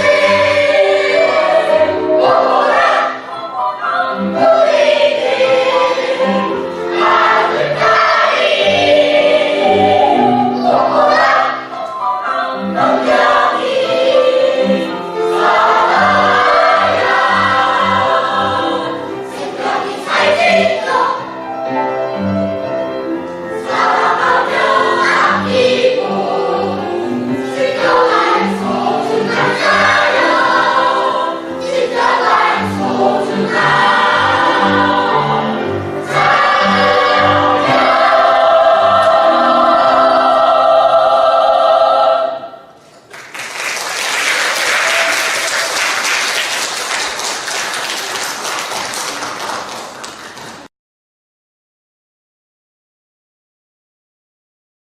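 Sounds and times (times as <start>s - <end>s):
family choir singing: 0.0s - 21.8s, 23.4s - 42.9s.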